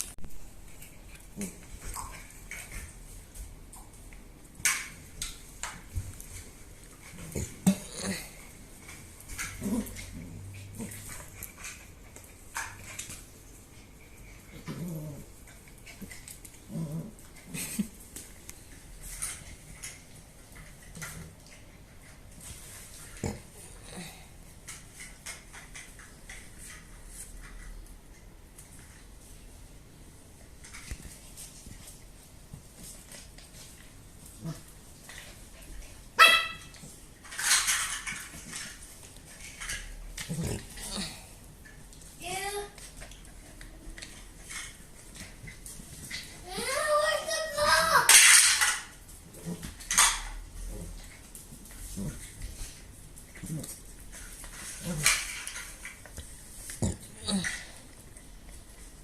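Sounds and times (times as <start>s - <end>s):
puppy barking: 36.2s - 36.7s.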